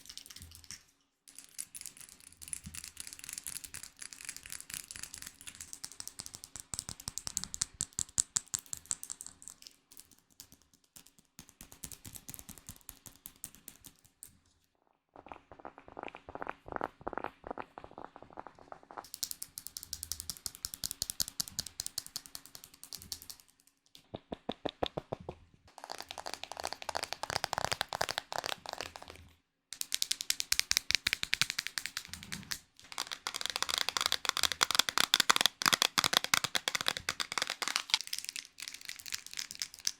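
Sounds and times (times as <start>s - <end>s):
crisp taps and clicks: 19.1s - 39.9s.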